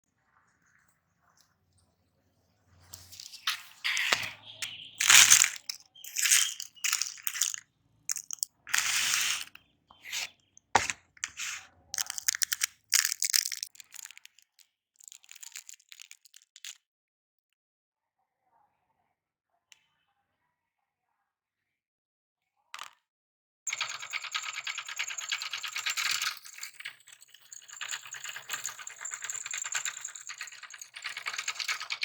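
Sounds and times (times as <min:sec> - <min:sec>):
meat grinder crunching candy: 0:05.0 - 0:16.8.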